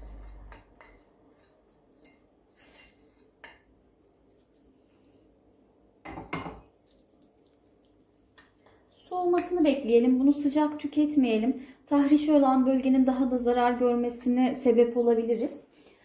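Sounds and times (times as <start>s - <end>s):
spoon scraping a pan: 0.0s - 3.8s.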